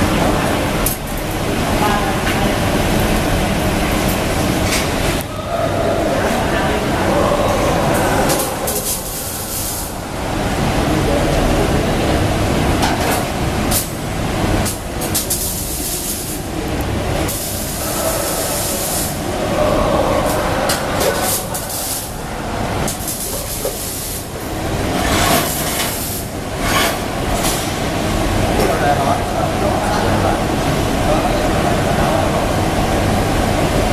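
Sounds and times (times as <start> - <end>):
welding arc crackling and hissing: 8.3 - 10.0, 14.6 - 16.5, 17.2 - 19.3, 21.0 - 22.2, 22.8 - 27.9.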